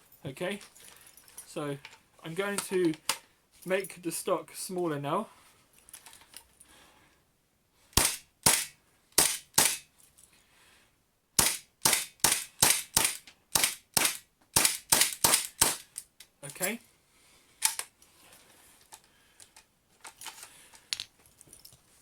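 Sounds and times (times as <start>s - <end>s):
airsoft pistol shots: 8.0s - 9.8s, 11.4s - 15.8s.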